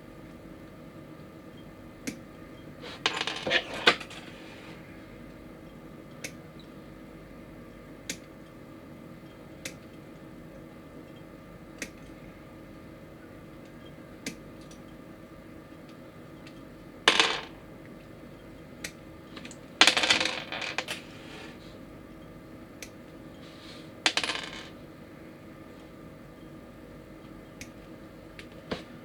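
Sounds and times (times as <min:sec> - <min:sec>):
plastic parts clattering on hard surface: 0:03.0 - 0:04.4.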